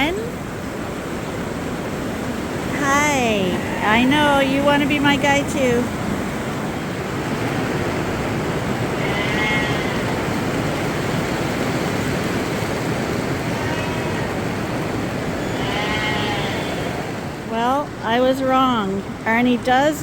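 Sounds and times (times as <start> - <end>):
rushing background noise: 0.0 - 20.0
sheep bleating: 3.4 - 4.1, 8.9 - 10.2, 13.5 - 14.5, 15.4 - 17.2.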